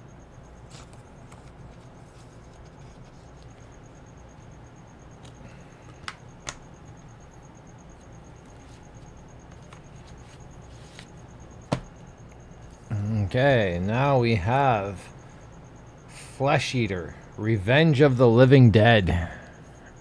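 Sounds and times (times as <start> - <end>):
low room hum: 0.0 - 20.0
plastic cases being handled: 0.6 - 4.3, 5.1 - 7.1, 7.8 - 12.8.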